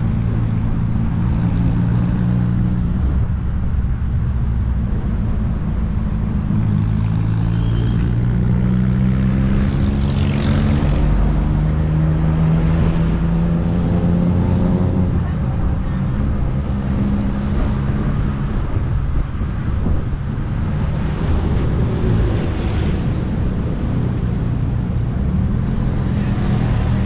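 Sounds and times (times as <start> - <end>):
wind noise: 10.6 - 27.0.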